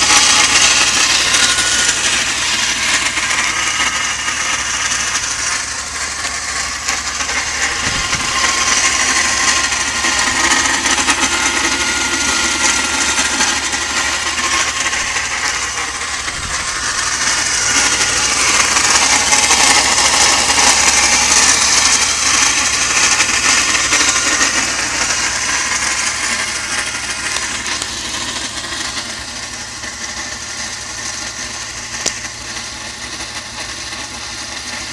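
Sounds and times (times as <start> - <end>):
car engine running: 0.0 - 34.9
high-pitched mechanical noise: 0.0 - 34.9.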